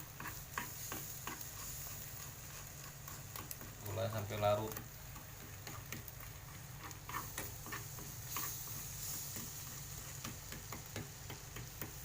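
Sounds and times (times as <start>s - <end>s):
utensil clicking against pan: 2.8s - 8.6s, 10.2s - 12.0s.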